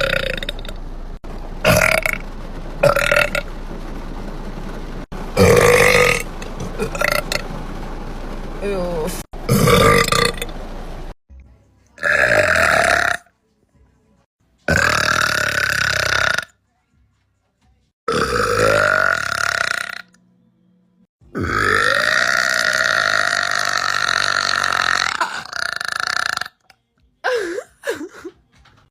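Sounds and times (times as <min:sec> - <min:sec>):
deep burps: 0:01.6 - 0:02.2, 0:05.4 - 0:07.3, 0:09.5 - 0:10.4, 0:14.7 - 0:16.5, 0:18.1 - 0:20.2, 0:21.3 - 0:26.8.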